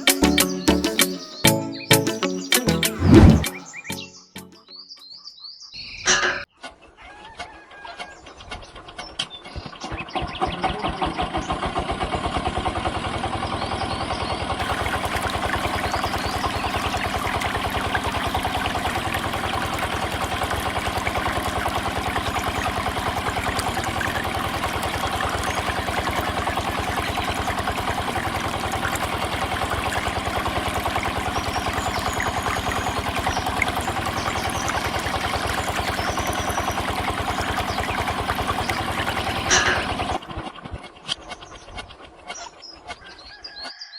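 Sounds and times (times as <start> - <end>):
small engine starting and running: 9.5 - 42.3.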